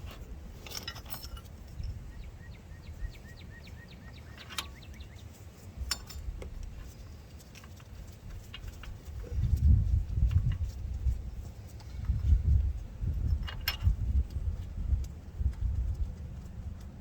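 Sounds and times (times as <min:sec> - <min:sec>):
metal tools clinking: 0:00.0 - 0:02.1, 0:04.2 - 0:09.5, 0:13.1 - 0:14.4
bird chirping: 0:01.7 - 0:05.4.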